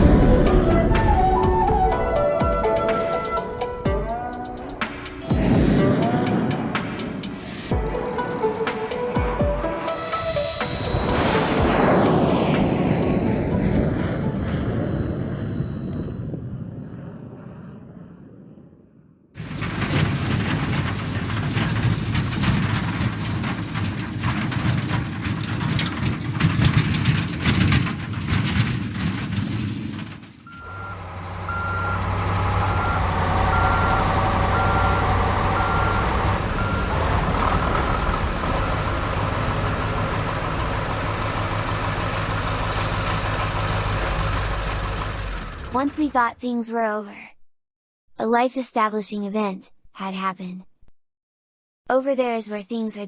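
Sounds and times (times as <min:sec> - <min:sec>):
loud crackling rumble: 0:00.0 - 0:03.8, 0:04.7 - 0:46.2
engine hum: 0:00.0 - 0:16.1, 0:30.6 - 0:46.2
vehicle reversing alarm beeps: 0:13.8 - 0:16.7, 0:19.5 - 0:23.5, 0:30.5 - 0:45.7.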